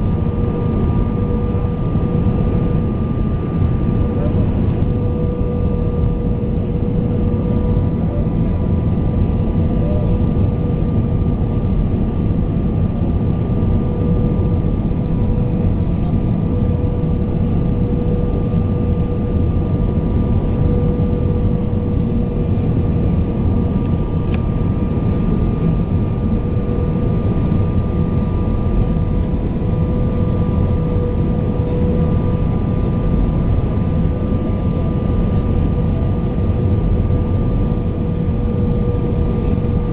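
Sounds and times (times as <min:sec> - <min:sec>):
airplane cabin airflow and engines: 0:00.0 - 0:39.9
steady hum: 0:00.0 - 0:39.9.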